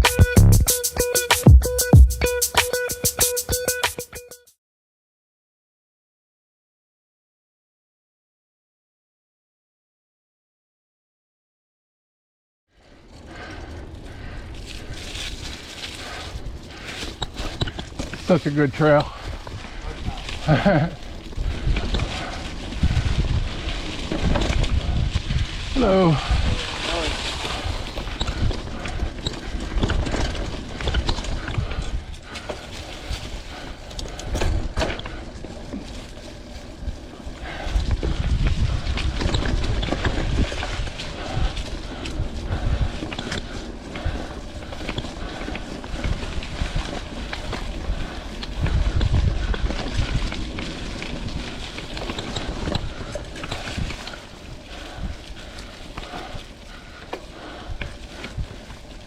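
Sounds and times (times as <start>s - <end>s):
bike tyres on dirt and rocks: 12.7s - 59.0s
bike frame and chain rattling: 12.8s - 59.0s
wind buffeting microphone: 13.2s - 59.0s.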